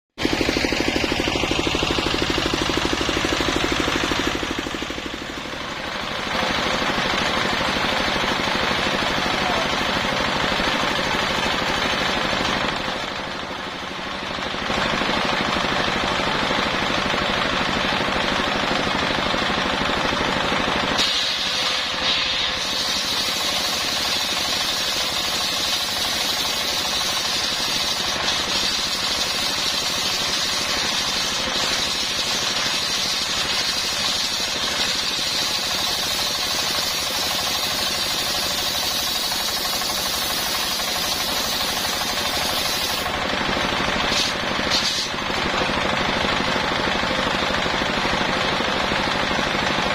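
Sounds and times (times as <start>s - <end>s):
circular saw ripping a log: 21.0s - 39.8s, 44.1s - 45.2s.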